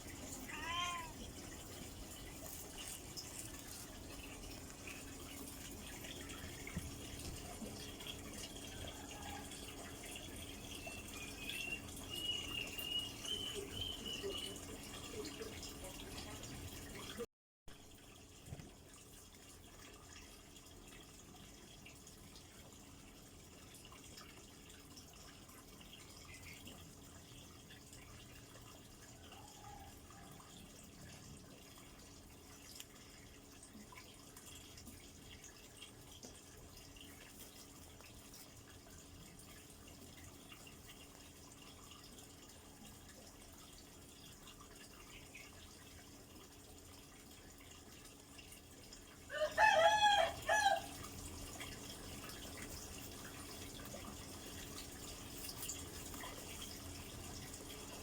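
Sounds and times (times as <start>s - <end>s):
rooster crowing: 49.3s - 51.0s.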